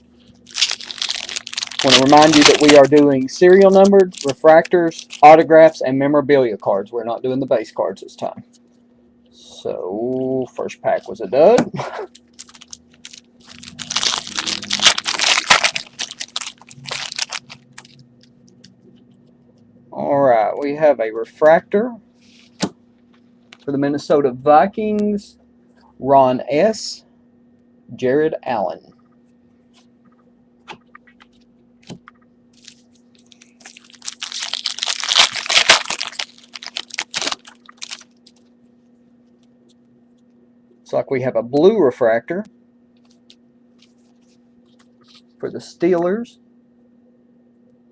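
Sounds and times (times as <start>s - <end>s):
faint steady hum: 0.0s - 47.9s
wrapper being torn and crinkled: 0.4s - 5.4s, 12.0s - 18.0s, 32.6s - 38.5s.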